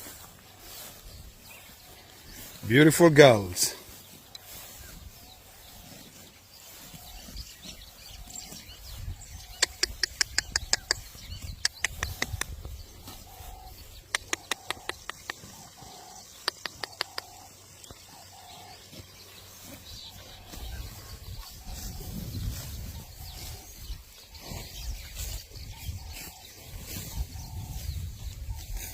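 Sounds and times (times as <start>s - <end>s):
sharp clicks: 14.1s - 15.4s, 16.5s - 17.3s.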